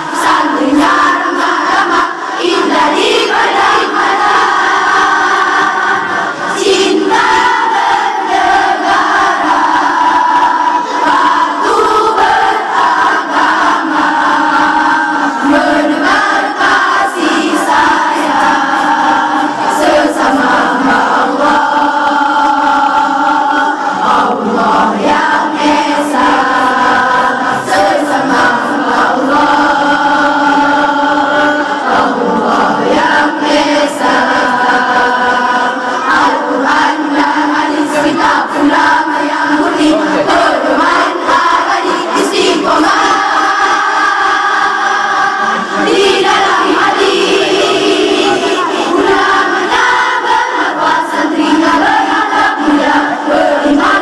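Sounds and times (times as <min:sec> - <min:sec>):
choir singing: 0:00.0 - 0:54.0.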